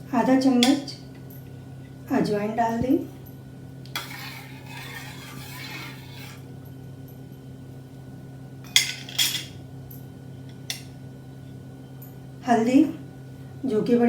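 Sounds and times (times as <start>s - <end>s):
steady low hum: 0.0s - 14.0s
spoon scraping pot: 4.0s - 6.5s.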